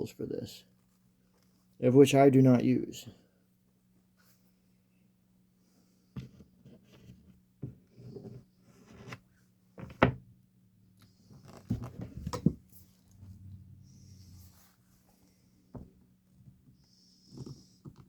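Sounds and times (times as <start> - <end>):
faint low hum: 10.1 - 17.1.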